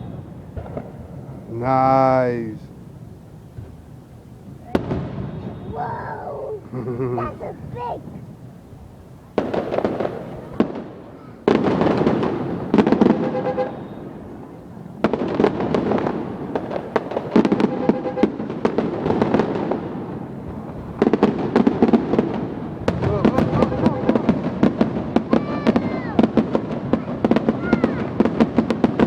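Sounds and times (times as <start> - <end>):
firework bursts: 0.0 - 29.0
firework crackling: 0.0 - 29.0.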